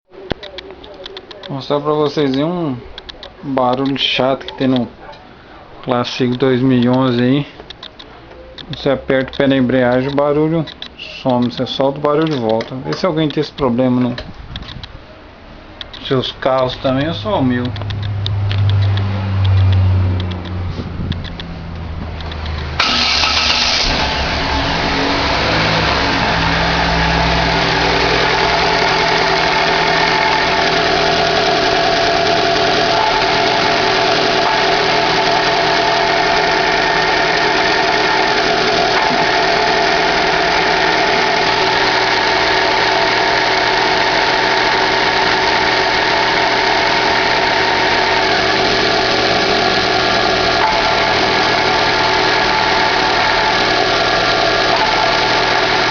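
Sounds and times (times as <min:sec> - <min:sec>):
car engine starting and idling: 0:15.8 - 0:55.9.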